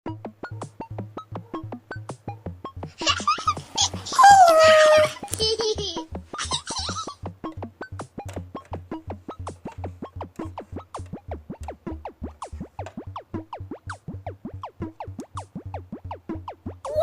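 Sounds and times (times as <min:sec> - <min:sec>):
pulsing bass beat: 0:07.2 - 0:17.0.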